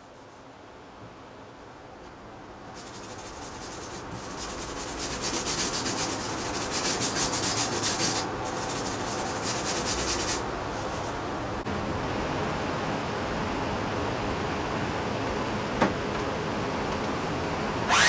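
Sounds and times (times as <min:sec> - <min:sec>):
hand rubbing fiberglass surface: 0:02.7 - 0:11.2.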